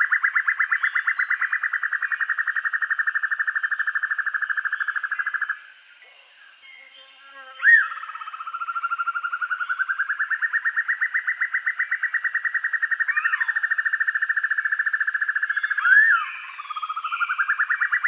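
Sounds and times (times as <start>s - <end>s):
bird pulsed trill: 6.6s - 18.0s.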